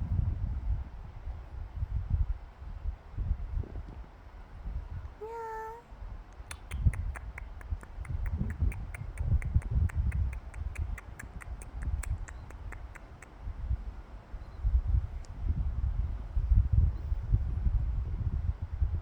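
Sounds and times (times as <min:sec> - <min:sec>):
cat meowing: 0:05.2 - 0:05.8
sharp clicks: 0:06.4 - 0:13.4.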